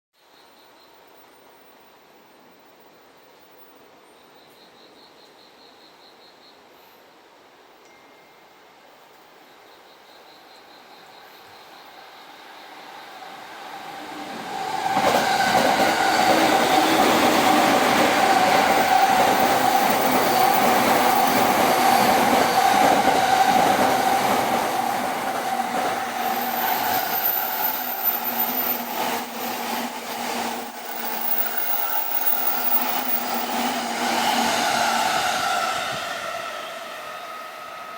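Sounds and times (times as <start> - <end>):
rail noise: 11.2 - 37.9
electric train passing at speed: 11.3 - 37.9.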